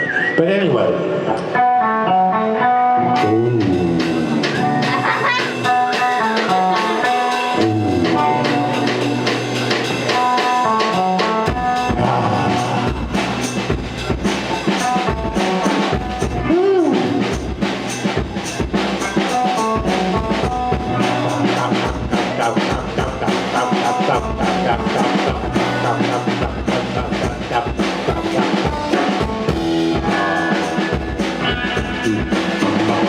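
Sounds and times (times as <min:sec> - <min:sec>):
electric guitar notes and slides: 0:00.0 - 0:33.0
drums and bass: 0:03.0 - 0:33.0.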